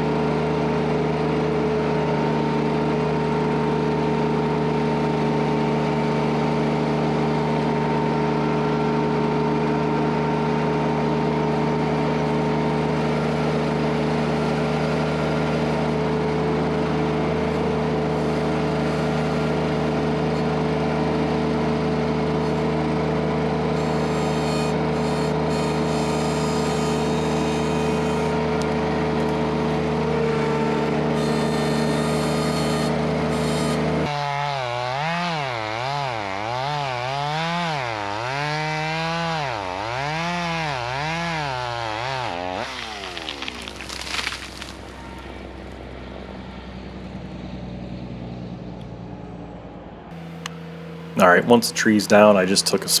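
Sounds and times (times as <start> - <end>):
engine running at high speed: 0.0 - 35.1.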